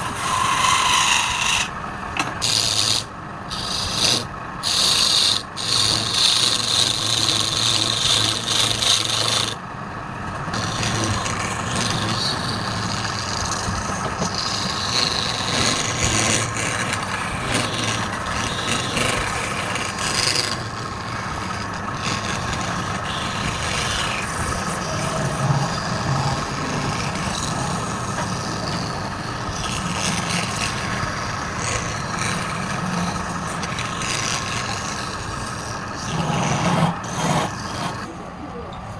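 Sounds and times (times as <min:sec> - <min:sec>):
tool scraping spinning wood: 0:00.0 - 0:09.6, 0:10.3 - 0:38.4
lathe motor whine: 0:00.0 - 0:38.9.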